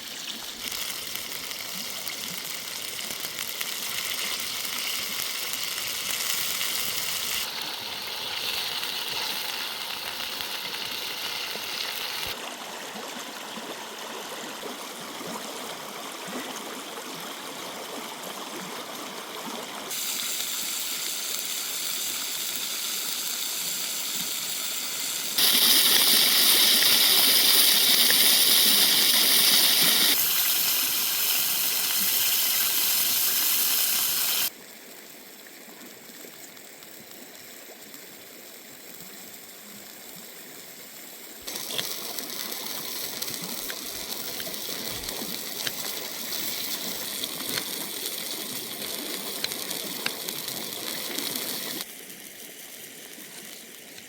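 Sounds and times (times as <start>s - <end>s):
rushing water: 24.8s - 34.6s, 41.4s - 51.9s.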